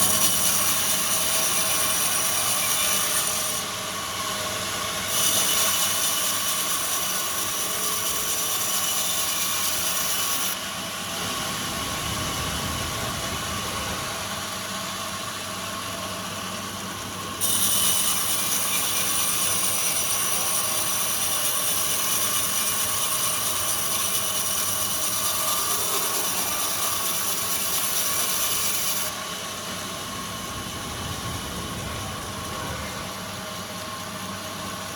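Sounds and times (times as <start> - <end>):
sawmill machinery drone: 0.0 - 34.9
saw cutting log hiss: 17.4 - 29.2.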